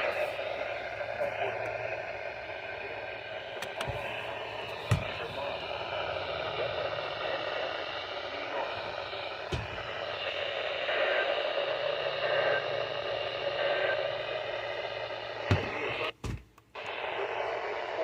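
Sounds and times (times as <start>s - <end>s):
radio static hiss: 0.0s - 18.0s
clicks: 3.5s - 5.5s.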